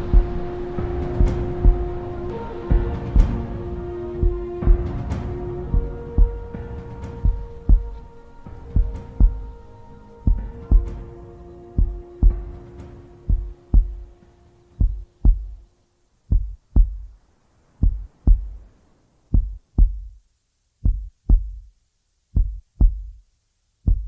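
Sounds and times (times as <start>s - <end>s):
heartbeat thumps: 0.0s - 11.2s, 11.8s - 14.2s, 14.8s - 15.6s, 16.3s - 17.2s, 17.8s - 18.6s, 19.3s - 20.2s, 20.8s - 21.7s, 22.4s - 23.2s
held musical tone: 0.0s - 15.6s.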